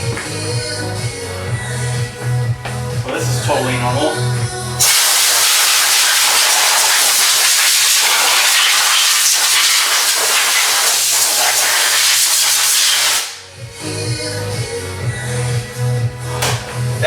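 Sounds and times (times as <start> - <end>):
faint background music: 0.0 - 4.8, 13.2 - 17.0
steam hissing: 4.8 - 13.5.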